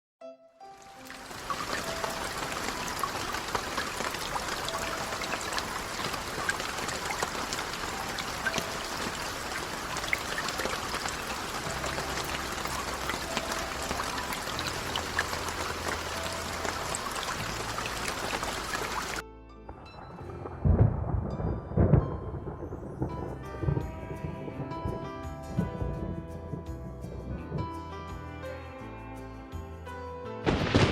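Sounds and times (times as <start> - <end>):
steady rain falling: 0.9 - 19.2.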